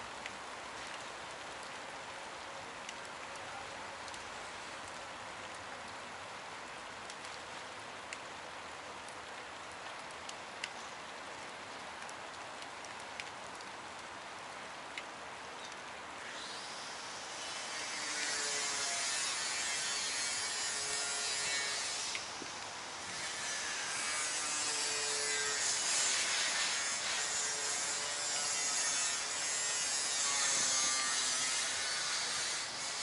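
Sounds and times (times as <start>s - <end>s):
faint clicks: 12.0s - 14.1s.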